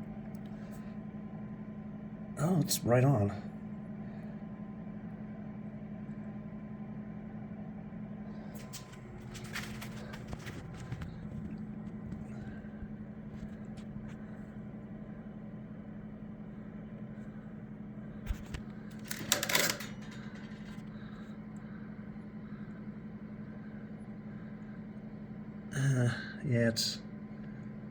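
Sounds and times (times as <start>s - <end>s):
low machine hum: 0.0s - 27.9s
handling clatter: 18.3s - 20.9s.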